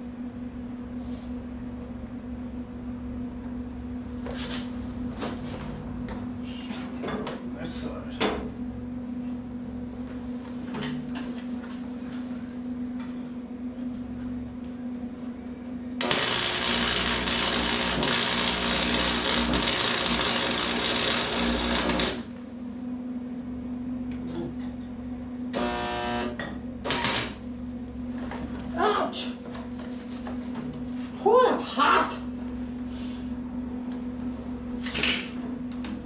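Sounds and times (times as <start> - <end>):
electric arc welder crackling: 16.0 - 22.4, 25.5 - 27.4.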